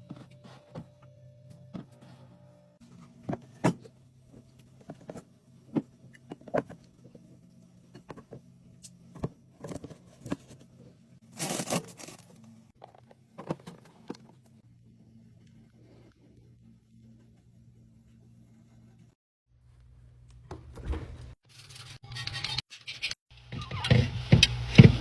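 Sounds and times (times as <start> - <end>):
packaging rustle: 11.3 - 12.4.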